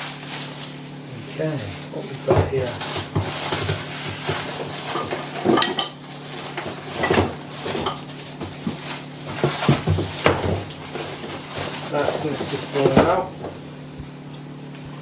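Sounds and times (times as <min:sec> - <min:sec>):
packaging rustling: 0:01.5 - 0:13.4.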